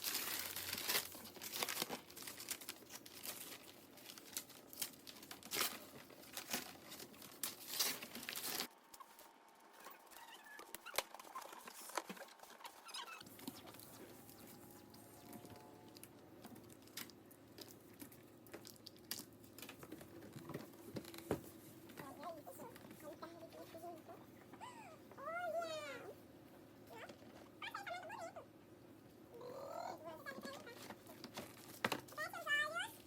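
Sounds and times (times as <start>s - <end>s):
packaging crinkling and rustling: 0.0s - 23.6s, 30.3s - 32.5s.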